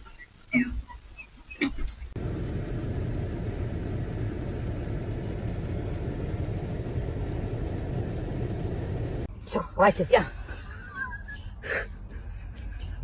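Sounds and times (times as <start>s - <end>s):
steady low rumble: 2.1s - 9.6s.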